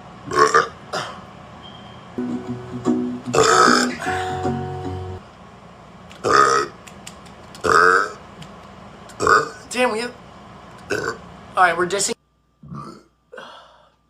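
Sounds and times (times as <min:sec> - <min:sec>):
guitar music: 0:02.2 - 0:05.2
man burping loudly: 0:03.3 - 0:04.5.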